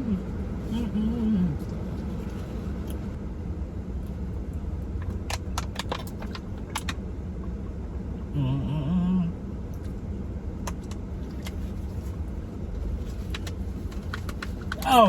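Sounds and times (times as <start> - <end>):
steady low rumble: 0.0 - 15.0
sharp clicks and rattles: 4.9 - 7.0, 12.7 - 14.9.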